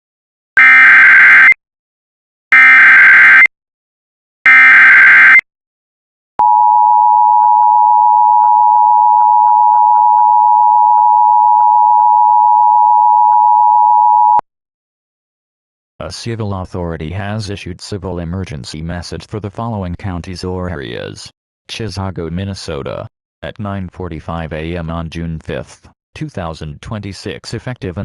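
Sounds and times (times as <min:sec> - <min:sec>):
data screech bursts: 0:04.5 - 0:05.4.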